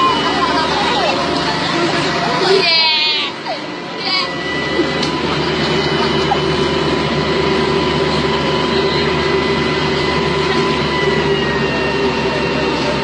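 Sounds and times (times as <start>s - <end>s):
bulldozer diesel engine running: 0.0s - 13.0s.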